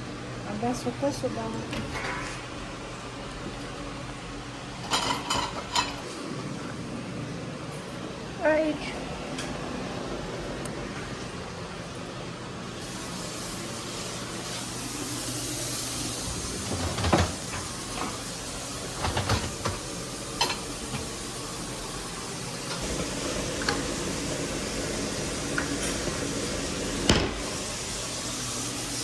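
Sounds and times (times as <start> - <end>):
pots and utensils clattering: 1.8 - 2.6, 4.8 - 6.1, 16.1 - 21.3, 25.2 - 27.6.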